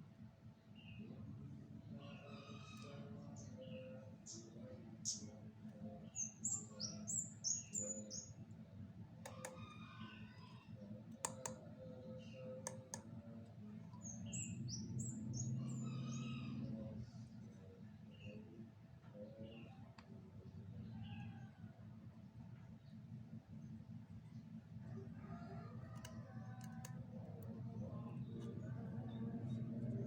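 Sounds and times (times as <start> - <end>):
steady low hum: 0.0 - 30.0
bird chirping: 3.4 - 8.4, 13.9 - 16.6
sharp clicks: 11.1 - 11.7, 12.6 - 13.1.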